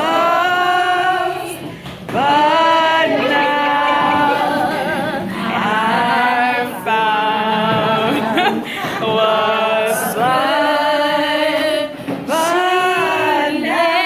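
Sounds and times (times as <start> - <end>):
voices singing held notes: 0.0 - 14.0.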